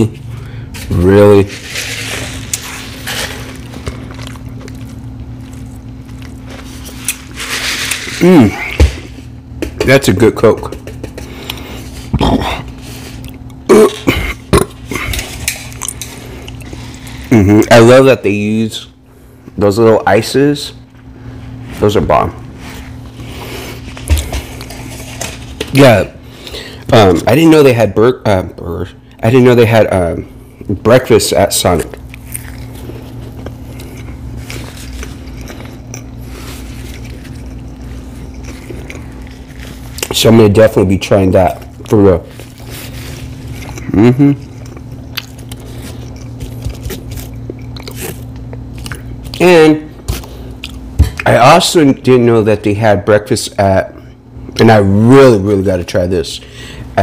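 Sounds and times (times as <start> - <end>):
steady low hum: 0.0 - 57.0
chewing and biting food: 2.3 - 8.8, 12.6 - 17.4, 31.7 - 40.2, 41.5 - 49.4, 50.0 - 51.2
man burping: 12.1 - 12.7, 13.6 - 15.2
man clearing his throat: 13.6 - 15.2.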